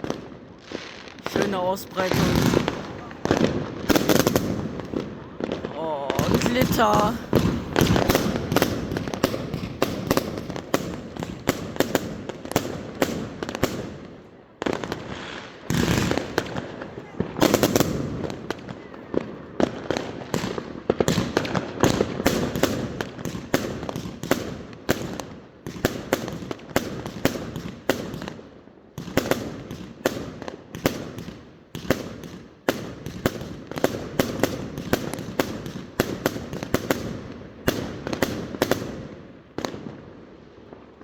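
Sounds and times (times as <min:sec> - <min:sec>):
fireworks bangs: 0:00.0 - 0:41.0
rumbling echo: 0:04.4 - 0:09.0.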